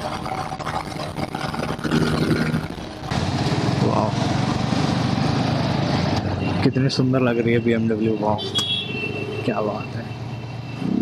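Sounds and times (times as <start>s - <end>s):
motorcycle engine running: 0.0s - 6.4s
wind and road noise: 0.0s - 11.0s.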